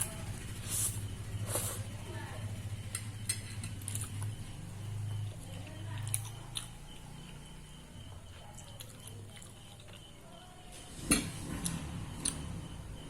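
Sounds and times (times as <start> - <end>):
steady low hum: 0.0 - 13.0
chewing noodles: 3.7 - 10.2.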